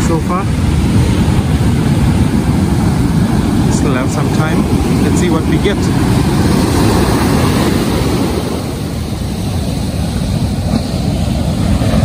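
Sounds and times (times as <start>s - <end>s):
surf waves breaking on beach: 0.0s - 12.0s
wind buffeting microphone: 0.0s - 12.0s.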